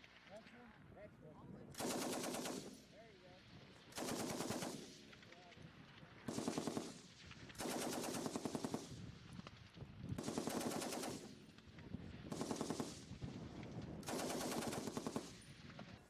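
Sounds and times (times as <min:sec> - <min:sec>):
machine gun firing bursts: 0:01.7 - 0:03.0, 0:03.8 - 0:05.3, 0:06.2 - 0:09.2, 0:10.2 - 0:11.6, 0:12.3 - 0:16.0.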